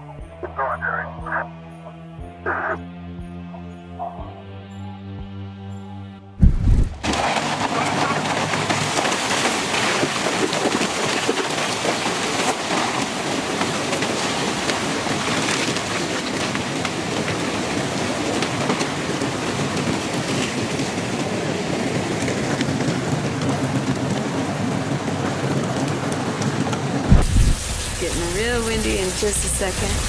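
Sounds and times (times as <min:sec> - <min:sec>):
wind: 0:06.4 - 0:07.6, 0:09.4 - 0:28.6
heavy rain downpour: 0:06.4 - 0:30.0.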